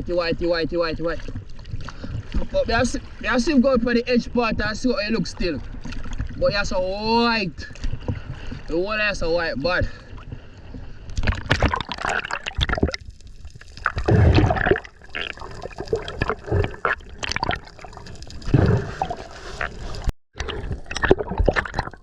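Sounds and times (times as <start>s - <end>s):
seawater sloshing and splashing: 5.4s - 7.0s, 7.6s - 22.0s.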